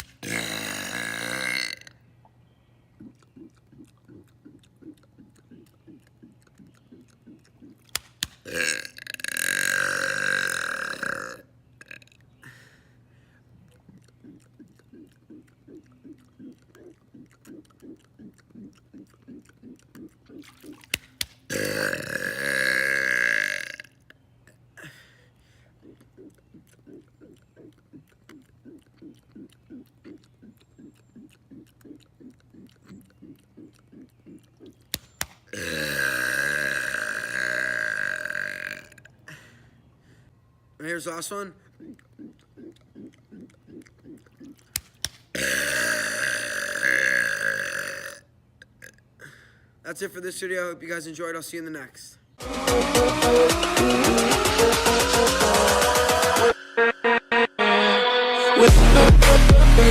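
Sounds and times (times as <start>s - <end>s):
sharp clicks: 0.0s - 0.2s, 5.6s - 8.5s, 34.8s - 35.5s, 44.6s - 45.3s
man gulping: 0.0s - 12.7s, 13.4s - 34.9s, 35.5s - 39.6s, 41.4s - 49.7s
man burping: 0.2s - 2.0s, 8.4s - 12.1s, 21.5s - 25.2s, 35.5s - 39.4s, 45.3s - 49.4s.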